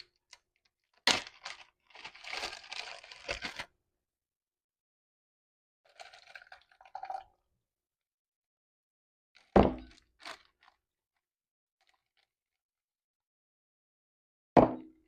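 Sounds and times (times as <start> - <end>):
plastic bag crinkling: 1.0 - 3.7.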